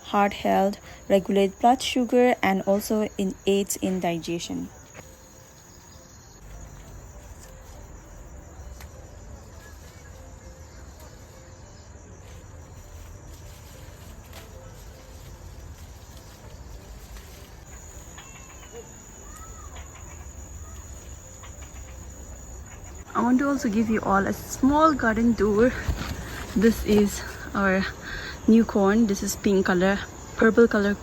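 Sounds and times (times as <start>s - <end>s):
insects trilling: 0.0s - 31.0s
faint bird chirp: 4.5s - 24.1s.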